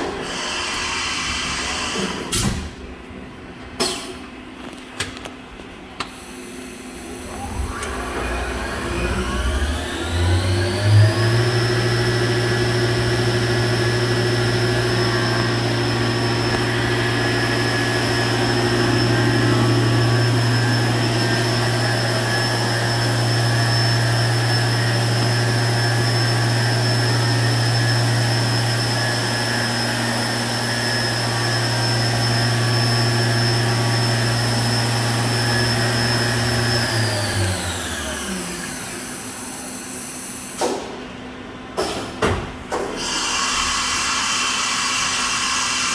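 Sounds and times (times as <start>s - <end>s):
machine spindle hum and whine: 0.0s - 45.9s
spindle winding down: 7.2s - 38.9s.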